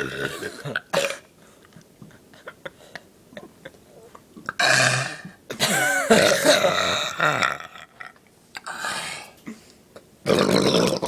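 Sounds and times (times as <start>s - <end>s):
person belching: 0.0s - 1.2s, 4.5s - 5.3s, 6.1s - 8.2s, 10.3s - 11.0s.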